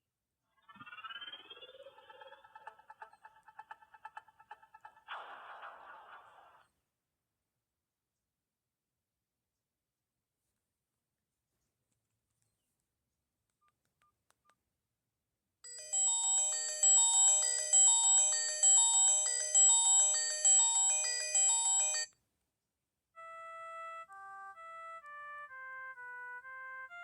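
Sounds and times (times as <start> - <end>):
beeping tune: 15.7 - 22.1
electronic phone ringtone: 15.7 - 22.1.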